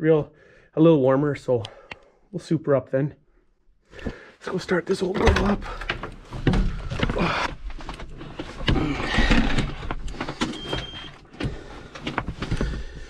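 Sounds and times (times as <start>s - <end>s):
knocks and clunks: 5.0s - 13.0s.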